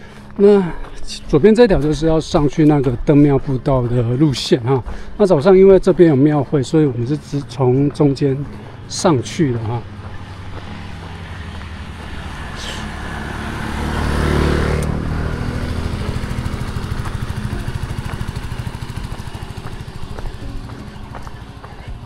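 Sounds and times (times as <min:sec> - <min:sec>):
vehicle passing on road: 0:00.0 - 0:22.0
low engine rumble: 0:05.0 - 0:22.0.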